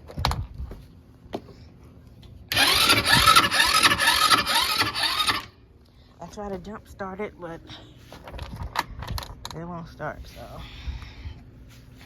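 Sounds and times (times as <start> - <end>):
engine cranking on starter: 2.5 - 5.6.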